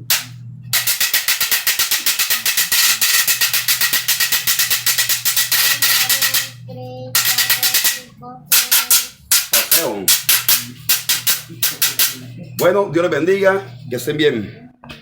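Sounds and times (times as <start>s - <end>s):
scraper rasped with wire fork: 0.8s - 6.6s, 7.2s - 12.2s.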